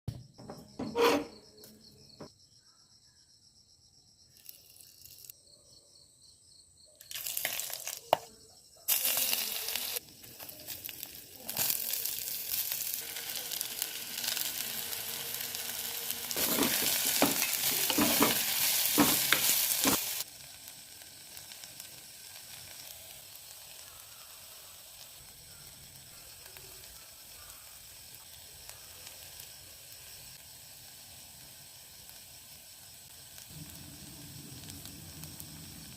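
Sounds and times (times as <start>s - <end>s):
chicken sizzling in hot oil: 7.0s - 8.3s, 8.9s - 35.9s.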